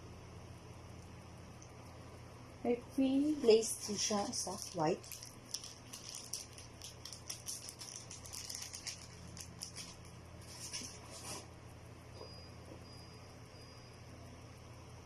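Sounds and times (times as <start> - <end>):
sneakers and packaging rustling: 4.4 - 11.4.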